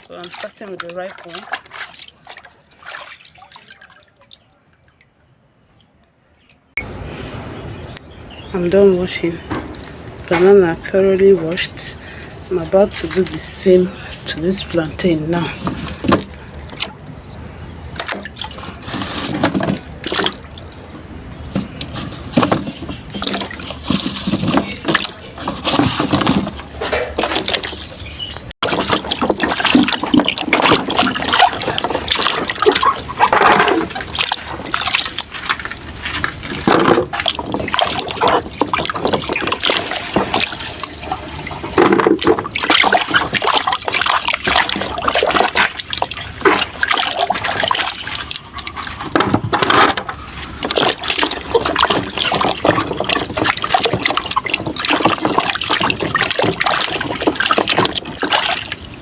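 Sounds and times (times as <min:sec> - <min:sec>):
water splashing and sloshing: 0:00.0 - 0:59.0.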